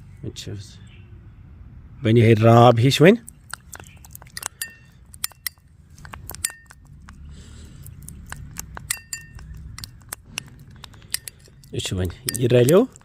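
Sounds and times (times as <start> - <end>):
spoon clinking against bowl: 4.3 - 5.6, 6.3 - 6.8, 8.6 - 13.0.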